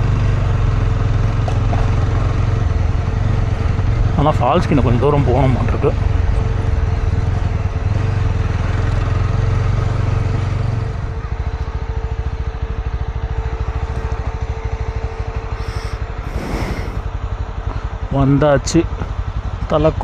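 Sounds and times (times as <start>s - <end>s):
motorcycle engine running: 0.0s - 20.0s
short hiss: 15.6s - 17.0s.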